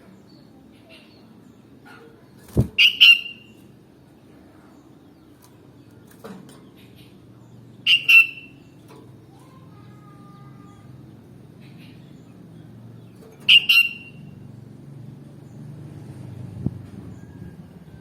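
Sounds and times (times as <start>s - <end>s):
bird calling sharply: 2.5s - 3.6s, 7.8s - 8.7s, 13.3s - 14.4s.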